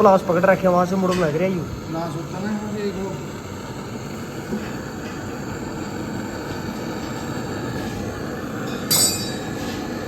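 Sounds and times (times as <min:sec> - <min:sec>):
low mechanical rumble: 0:00.0 - 0:10.0
tool clinking on metal: 0:08.7 - 0:09.6.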